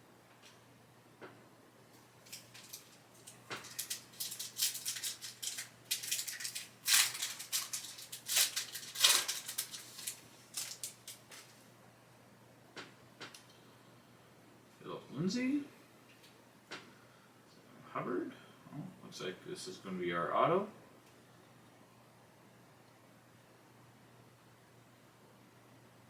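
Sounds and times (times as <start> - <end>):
cards rustling: 2.3 - 11.6
foil wrapper tearing and crinkling: 2.3 - 11.6.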